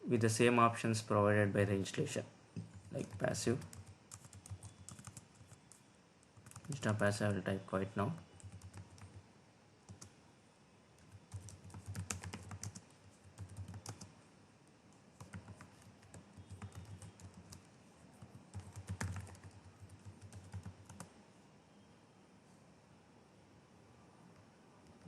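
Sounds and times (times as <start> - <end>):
keyboard typing: 2.6 - 7.4, 8.1 - 9.2, 9.9 - 10.1, 11.0 - 14.1, 14.9 - 21.1.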